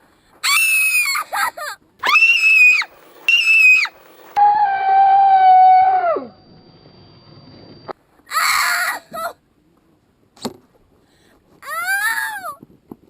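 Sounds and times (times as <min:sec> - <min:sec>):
person screaming: 0:02.0 - 0:03.9.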